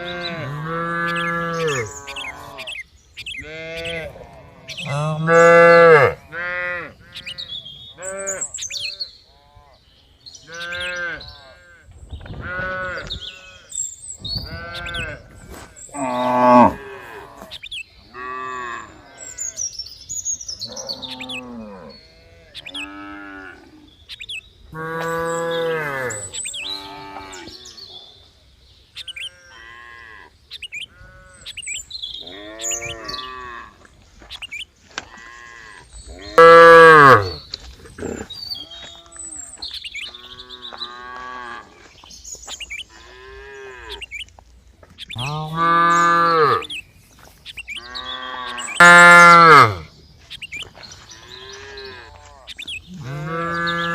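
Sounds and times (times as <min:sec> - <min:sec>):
cows mooing: 0:00.0 - 0:02.7, 0:03.4 - 0:07.4, 0:14.5 - 0:17.5, 0:24.8 - 0:27.5, 0:35.2 - 0:37.4, 0:45.2 - 0:46.7, 0:47.9 - 0:49.9, 0:51.2 - 0:53.9.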